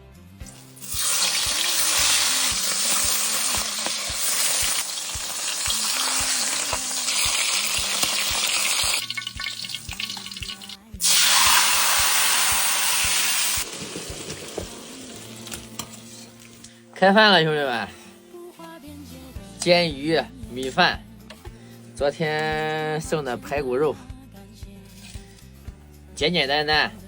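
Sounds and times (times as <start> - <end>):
fish sizzling in hot oil: 0.4 - 16.7.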